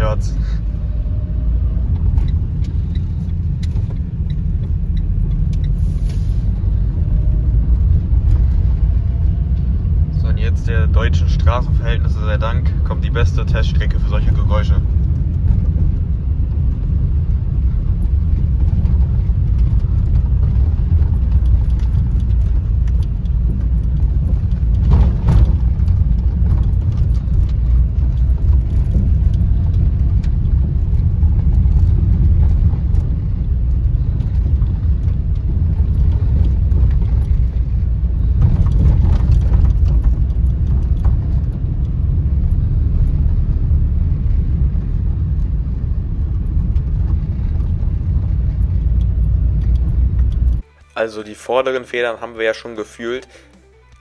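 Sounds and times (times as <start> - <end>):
tyres rumbling on rough road: 0.0 - 54.0
suspension knocks: 12.2 - 50.6.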